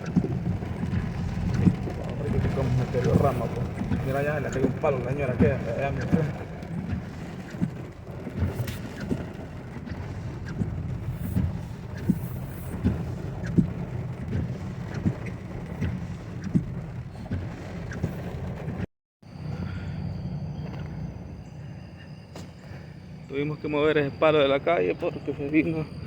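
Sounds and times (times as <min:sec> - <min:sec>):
short knocks and thuds: 0:00.0 - 0:18.9
wind rumbling on microphone: 0:00.0 - 0:26.0.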